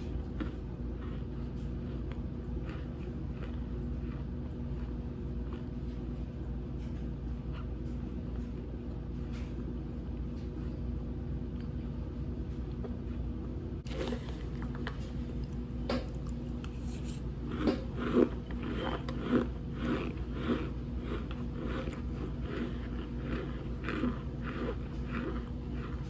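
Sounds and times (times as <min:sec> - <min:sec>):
squeaky crunchy chewing: 0:00.0 - 0:06.1, 0:13.9 - 0:26.0.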